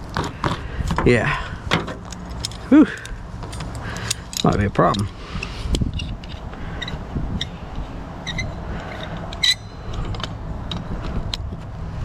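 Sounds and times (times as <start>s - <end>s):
hand tools clinking on metal: 2.1s - 5.2s.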